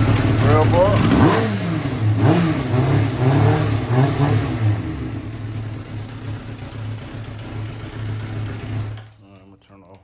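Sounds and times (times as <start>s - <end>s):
motorcycle engine idling: 0.0s - 1.6s, 4.9s - 9.7s
motorcycle engine revving: 0.0s - 9.1s.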